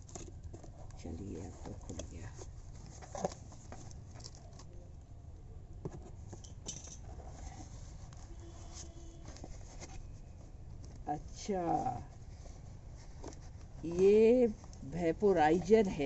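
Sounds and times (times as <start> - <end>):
cardboard packaging rustling: 0.0 - 4.8, 5.9 - 14.9.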